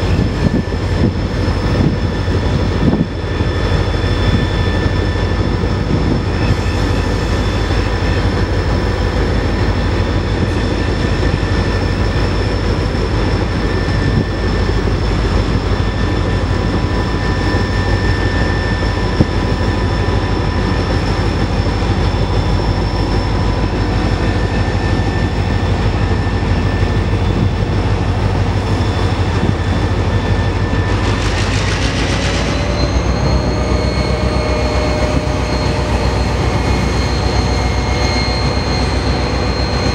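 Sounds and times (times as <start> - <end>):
diesel locomotive engines droning: 0.0 - 39.9
high whining tones: 0.0 - 39.9
rushing noise burst: 27.4 - 37.8.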